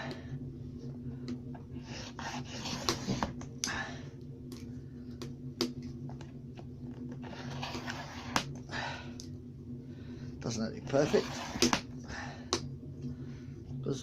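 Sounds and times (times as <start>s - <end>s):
chopstick scraping across card: 7.2s - 8.5s, 10.9s - 11.8s.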